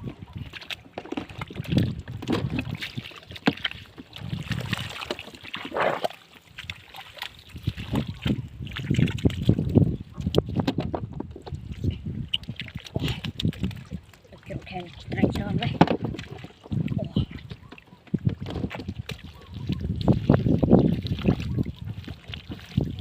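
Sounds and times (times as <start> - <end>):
water splashing and sloshing: 0.0 - 23.0
sharp water slaps: 12.3 - 14.3.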